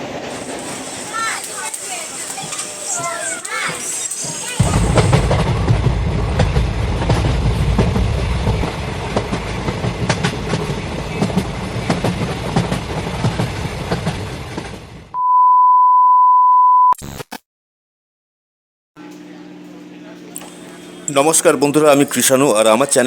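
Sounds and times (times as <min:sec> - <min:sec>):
train rumbling along track: 0:00.0 - 0:15.1
wheels clattering over rails: 0:00.0 - 0:15.1
loud single-pitched beep: 0:15.2 - 0:17.0.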